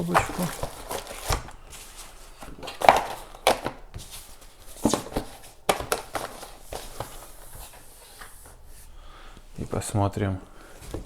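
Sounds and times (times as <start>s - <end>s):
cardboard rustling: 0.0s - 9.0s
knocks in cardboard box: 2.6s - 7.1s.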